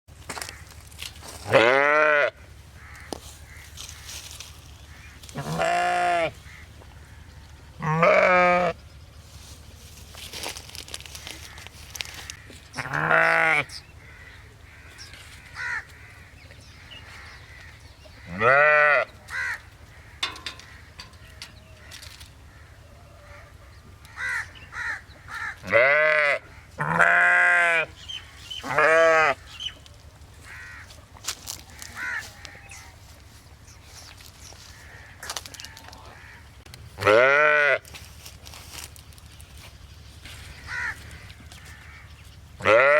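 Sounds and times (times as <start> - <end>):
sheep bleating: 1.4 - 2.4, 5.3 - 6.4, 7.8 - 8.8, 12.7 - 13.8, 18.2 - 19.6, 25.4 - 27.9, 28.6 - 29.4, 37.0 - 37.9, 42.6 - 42.9.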